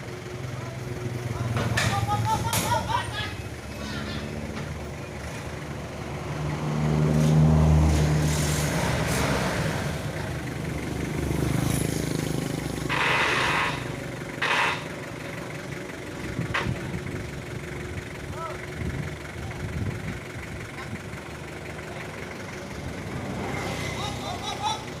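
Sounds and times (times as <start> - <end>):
engine revving: 1.0 - 17.0, 21.3 - 25.0.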